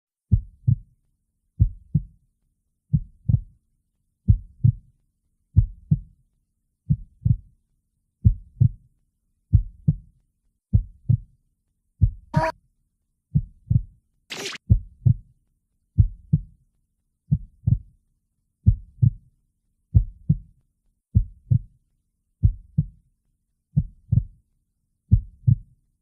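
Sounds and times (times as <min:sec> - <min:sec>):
heartbeat thumps: 0:01.6 - 0:02.1, 0:02.9 - 0:03.5, 0:06.9 - 0:07.4, 0:09.5 - 0:10.0, 0:13.4 - 0:15.2, 0:18.6 - 0:19.2, 0:21.2 - 0:21.7, 0:22.4 - 0:22.9, 0:23.8 - 0:24.4, 0:25.1 - 0:25.6
short high-pitched sound: 0:14.3 - 0:14.6.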